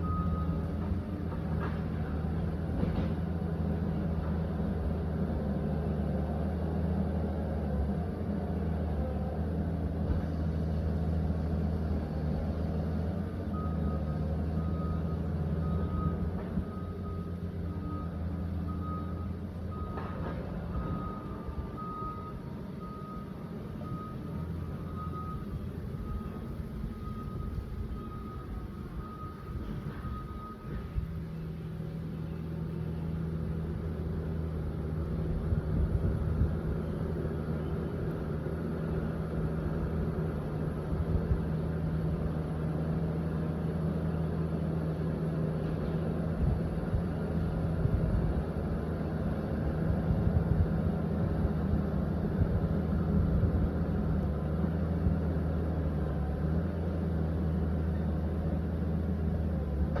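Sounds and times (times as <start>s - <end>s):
diesel engine running: 0.0s - 60.0s.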